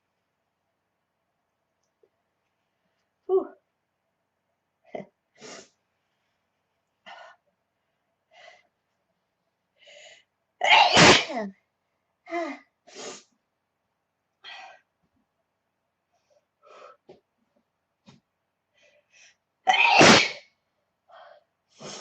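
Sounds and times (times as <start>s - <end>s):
woman sneezing: 10.6s - 11.5s, 19.7s - 20.4s.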